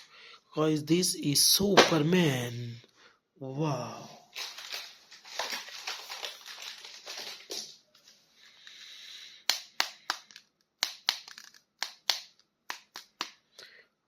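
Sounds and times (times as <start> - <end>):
plastic packaging crinkling: 4.2 - 9.0
plastic clicks: 9.5 - 13.3.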